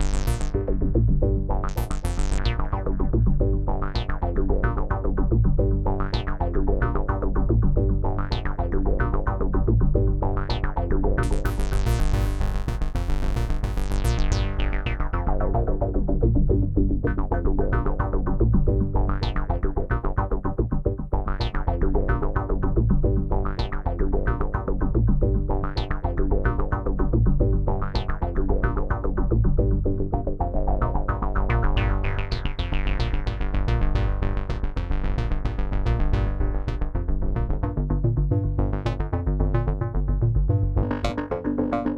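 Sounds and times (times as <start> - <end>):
low synth bass: 0.0 - 41.9
synthesizer note sequence: 40.9 - 41.9.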